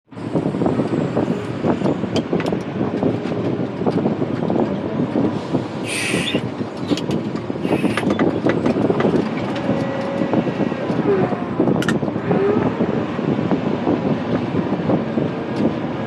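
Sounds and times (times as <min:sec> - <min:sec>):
diesel engine rattling: 0:00.1 - 0:16.0
short hisses: 0:05.8 - 0:06.5, 0:07.6 - 0:08.1.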